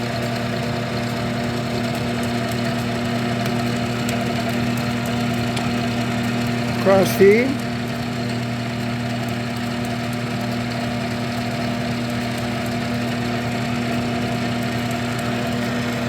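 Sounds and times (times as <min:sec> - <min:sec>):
metal lathe hum and gear whir: 0:00.0 - 0:16.0.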